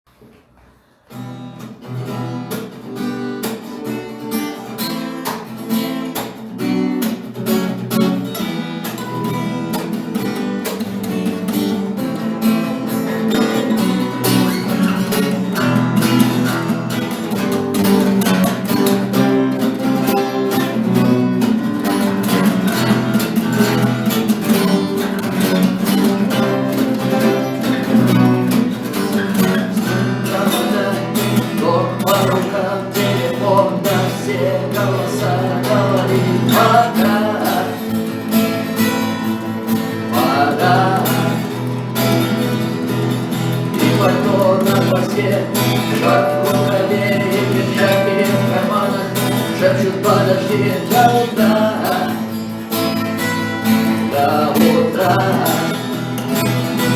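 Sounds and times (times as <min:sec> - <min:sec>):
acoustic guitar strumming: 0:00.7 - 0:56.9.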